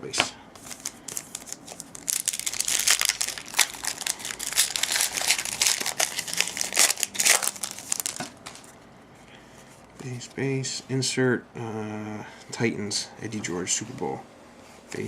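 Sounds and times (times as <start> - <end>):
foil wrapper crinkling and tearing: 0.6 - 8.8.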